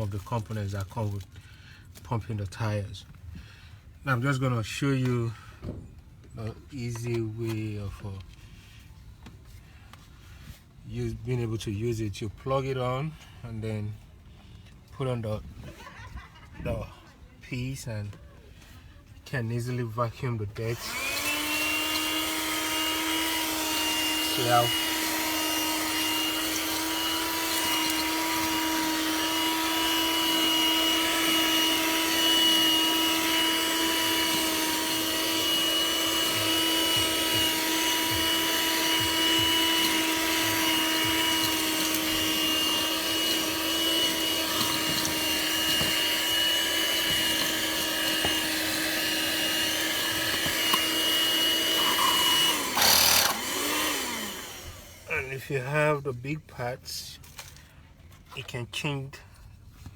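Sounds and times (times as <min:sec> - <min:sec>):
handheld vacuum cleaner running: 0:20.7 - 0:55.1.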